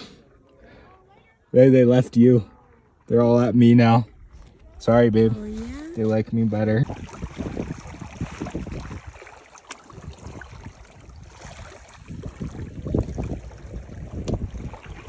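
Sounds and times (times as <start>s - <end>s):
lake water lapping: 0.0s - 15.0s
wind buffeting microphone: 3.8s - 15.0s.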